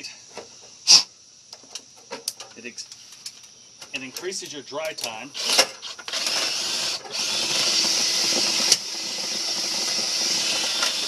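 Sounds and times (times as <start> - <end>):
faint machine hum: 0.0 - 8.8.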